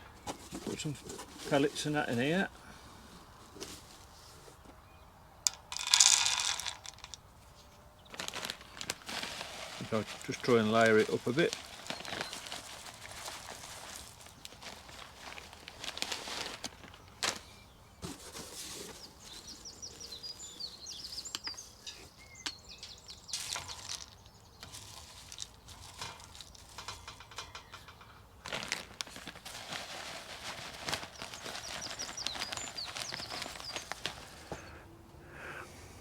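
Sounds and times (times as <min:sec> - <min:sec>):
clicking and rustling of bird food: 0:05.5 - 0:07.2, 0:08.0 - 0:17.6, 0:18.9 - 0:34.6
small birds chirping: 0:09.7 - 0:34.9.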